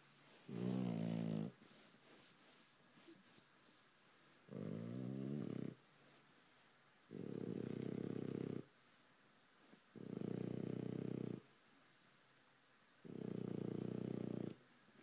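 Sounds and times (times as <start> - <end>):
dog snoring: 0.5 - 1.6, 4.5 - 5.8, 7.1 - 8.7, 10.0 - 11.4, 13.0 - 14.6.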